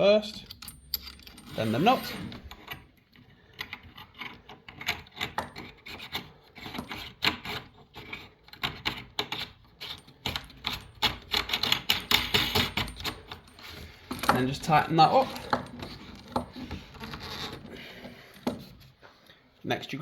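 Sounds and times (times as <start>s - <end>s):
nut scraping and clicking: 2.2s - 17.7s.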